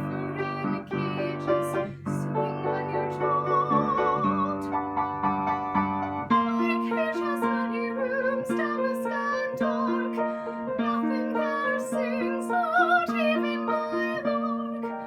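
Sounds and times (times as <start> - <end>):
woman singing with vibrato: 0.0 - 5.0, 6.3 - 15.0
instrumental accompaniment: 1.0 - 8.1.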